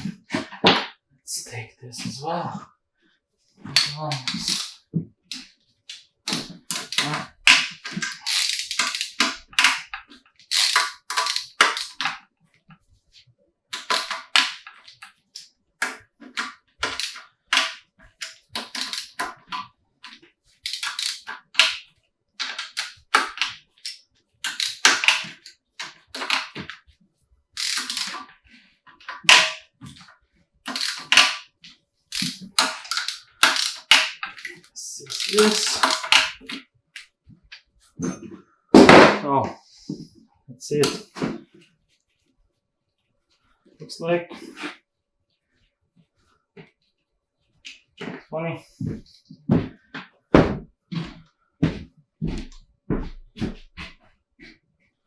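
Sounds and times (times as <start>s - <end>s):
metallic clicks and clatters of tools: 3.7s - 5.4s, 6.3s - 12.2s, 13.8s - 21.8s, 22.4s - 26.8s, 27.6s - 28.3s, 30.7s - 31.4s, 32.1s - 37.1s.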